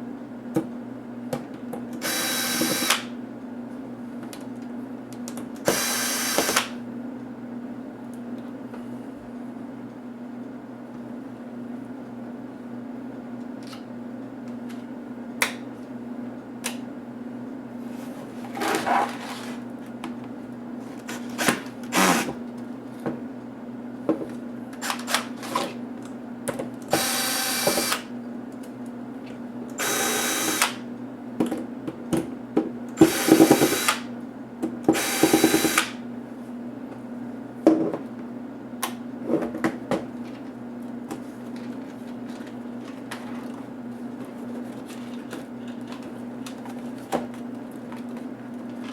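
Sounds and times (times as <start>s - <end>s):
small electric screwdriver running: 2.0s - 3.1s, 5.7s - 6.7s, 26.9s - 28.1s, 29.8s - 30.8s, 33.0s - 34.1s, 35.0s - 36.0s
clicks and knocks of parts handled: 44.7s - 48.9s.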